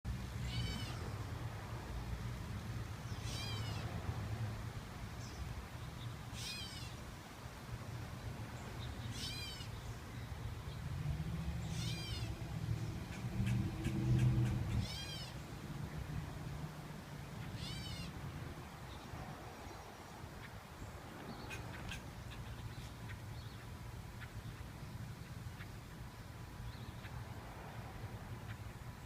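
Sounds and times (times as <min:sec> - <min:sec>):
bird mewing call: 0:06.4 - 0:07.0, 0:09.1 - 0:09.7, 0:11.7 - 0:12.3, 0:13.1 - 0:15.4, 0:17.5 - 0:18.1.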